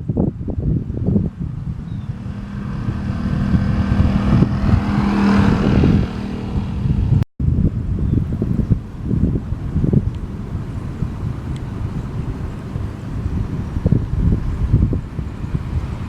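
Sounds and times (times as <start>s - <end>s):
wind buffeting microphone: 0.0s - 16.0s
vehicle passing by: 0.8s - 7.2s.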